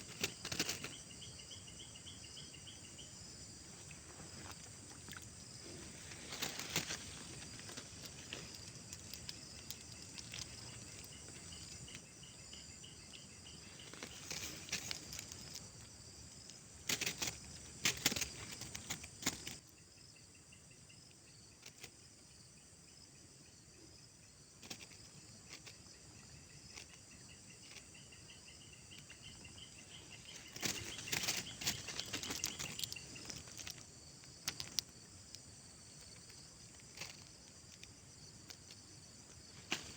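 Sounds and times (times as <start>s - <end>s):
high-pitched insect chorus: 0.0s - 39.9s
clicks and rustling: 0.1s - 0.9s, 16.9s - 19.6s, 30.4s - 34.9s.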